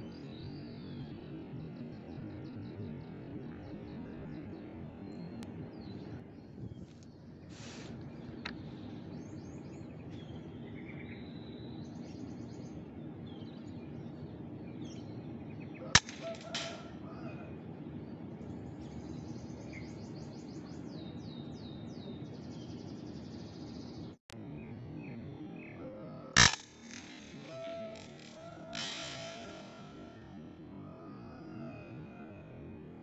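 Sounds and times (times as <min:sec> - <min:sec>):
small birds chirping: 0:00.0 - 0:32.9
outdoor background noise: 0:00.0 - 0:33.0
gunshot crack: 0:16.0 - 0:16.9, 0:26.4 - 0:30.0.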